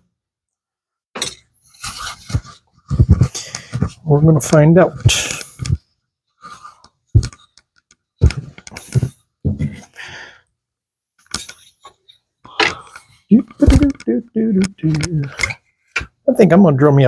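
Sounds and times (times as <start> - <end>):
wire knocking and clicking in wood: 7.2 - 9.6.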